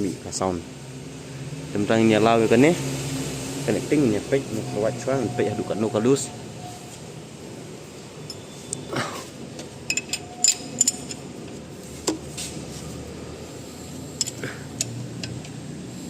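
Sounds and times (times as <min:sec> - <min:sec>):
metal tools clinking: 0:08.2 - 0:08.6, 0:09.6 - 0:11.9, 0:14.1 - 0:15.6.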